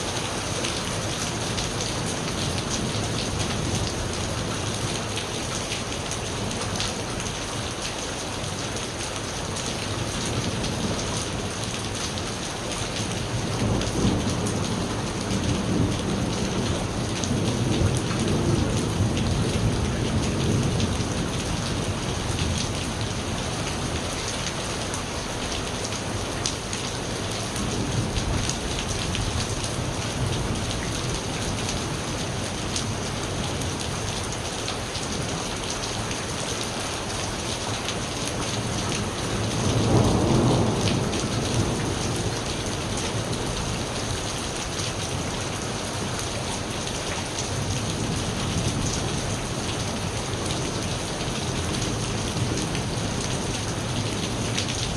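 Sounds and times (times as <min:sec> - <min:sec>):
heavy rain: 0:00.0 - 0:54.9
thunder rumbling: 0:39.1 - 0:42.4.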